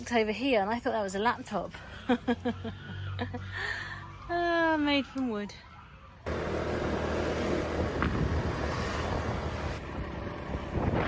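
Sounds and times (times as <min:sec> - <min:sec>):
scooter engine humming: 0:06.2 - 0:11.0
wind rushing over microphone: 0:07.7 - 0:11.0.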